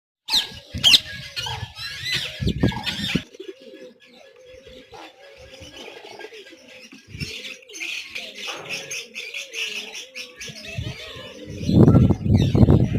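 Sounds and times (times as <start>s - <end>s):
birds chirping and squawking: 0.3s - 12.9s.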